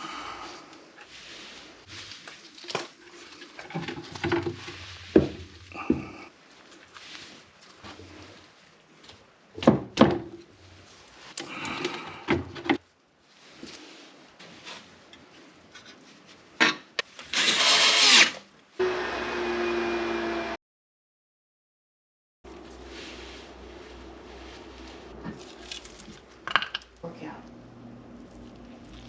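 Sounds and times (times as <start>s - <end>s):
power tool running: 17.4s - 20.6s.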